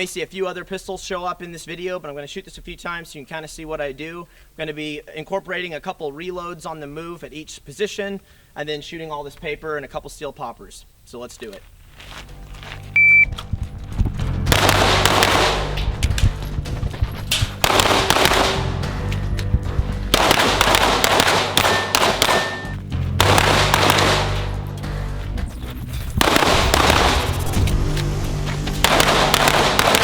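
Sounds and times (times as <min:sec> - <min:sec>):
background music: 0:12.1 - 0:30.0
rapid pistol shots: 0:14.5 - 0:16.0, 0:17.4 - 0:19.0, 0:20.0 - 0:24.7, 0:26.2 - 0:27.6, 0:28.8 - 0:30.0.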